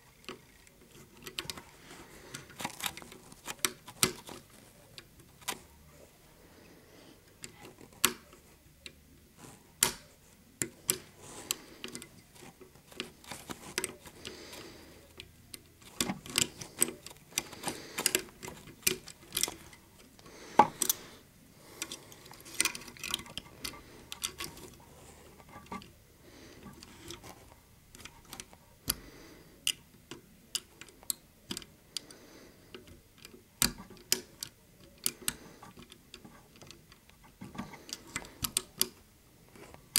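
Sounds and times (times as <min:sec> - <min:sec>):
lock pick clicking in lock: 0:09.8 - 0:14.6.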